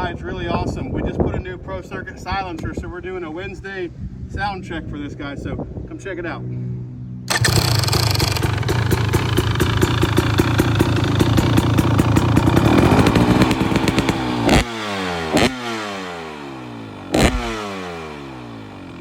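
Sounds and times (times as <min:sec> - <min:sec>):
exhaust cracks: 0:07.3 - 0:19.0
two-stroke engine revving: 0:07.3 - 0:19.0.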